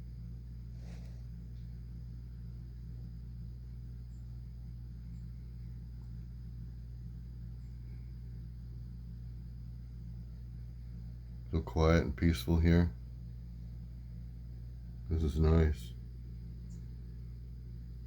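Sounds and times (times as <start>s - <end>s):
steady low hum: 0.0s - 18.0s
small birds chirping: 4.0s - 6.2s, 16.6s - 17.4s.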